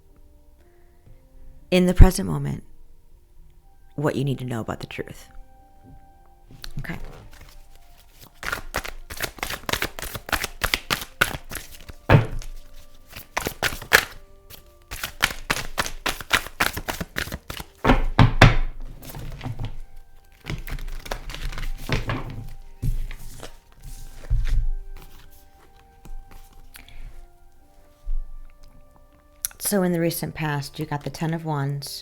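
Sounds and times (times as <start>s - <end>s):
quiet background music: 0.0s - 32.0s
cards being shuffled: 6.6s - 27.2s
deck thumping on table: 8.4s - 14.2s, 14.9s - 19.8s, 20.4s - 23.6s.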